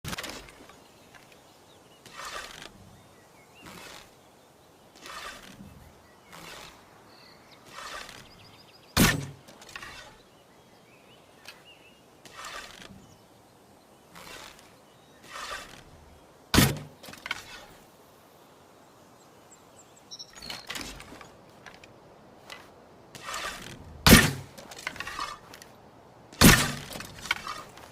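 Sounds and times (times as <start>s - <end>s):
arrow swishes: 12.3s - 13.0s, 15.2s - 15.9s, 23.2s - 25.5s, 26.4s - 27.9s.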